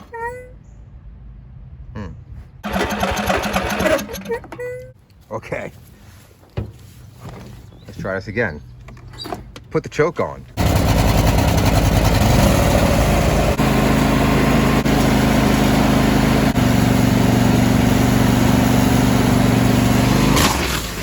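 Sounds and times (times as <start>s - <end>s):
riding mower engine starting: 2.6s - 4.6s, 10.6s - 21.0s.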